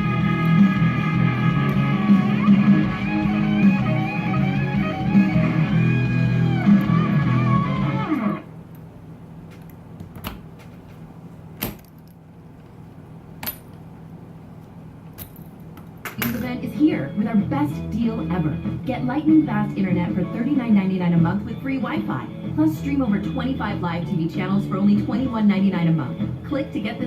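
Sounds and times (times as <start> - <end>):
plucked guitar music: 0.0 - 8.4.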